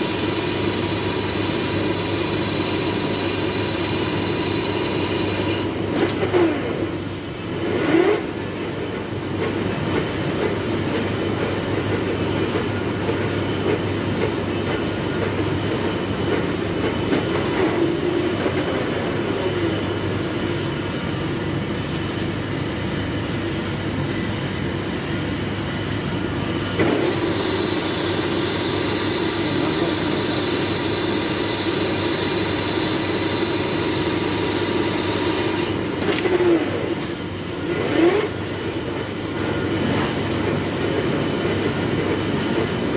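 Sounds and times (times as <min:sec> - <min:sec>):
metal lathe running: 0:00.0 - 0:06.4, 0:26.6 - 0:37.6.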